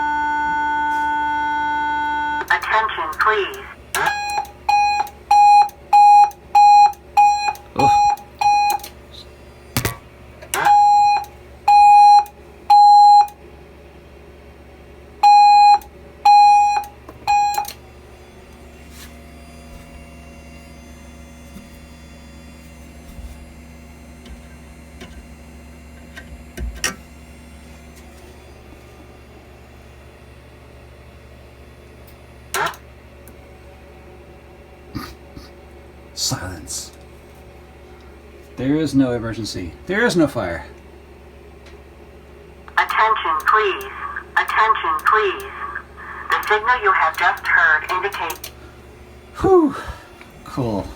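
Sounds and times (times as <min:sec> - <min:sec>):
fire alarm beeping: 0:00.0 - 0:03.2, 0:04.0 - 0:08.9, 0:10.6 - 0:13.4, 0:15.2 - 0:17.8
click: 0:48.3 - 0:48.6.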